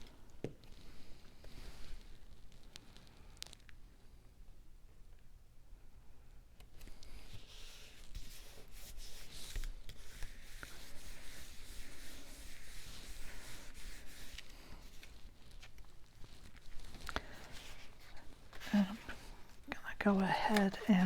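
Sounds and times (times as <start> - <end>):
hands rustling cardstock: 6.6 - 21.0.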